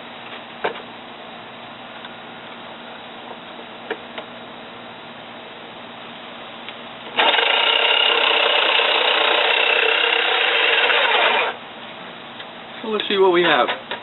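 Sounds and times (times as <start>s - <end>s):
electric jigsaw cutting wood: 7.2s - 11.6s.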